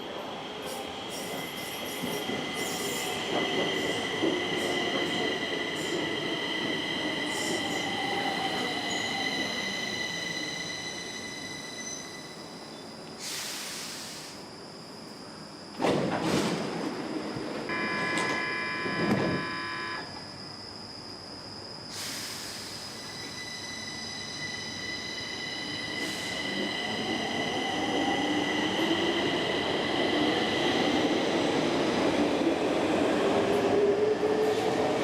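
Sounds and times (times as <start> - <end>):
train traction motors whining: 17.7 - 20.0
warning tones: 17.7 - 20.1.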